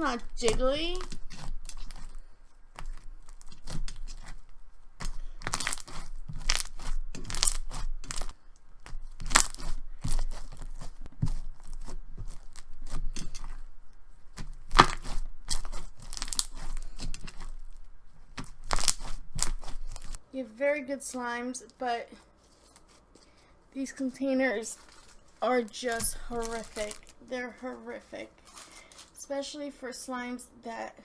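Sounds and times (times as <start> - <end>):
sticky clicks and crackling pops: 0.0 - 13.6, 14.3 - 17.6, 18.3 - 20.2
slime squeezed and stretched: 5.0 - 13.1, 14.4 - 20.2.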